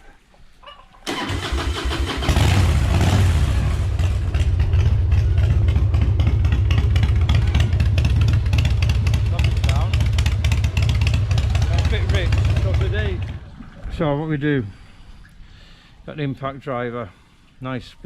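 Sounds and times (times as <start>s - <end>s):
electric starter cranking: 1.1s - 4.4s
motorcycle engine running loudly: 2.3s - 13.4s.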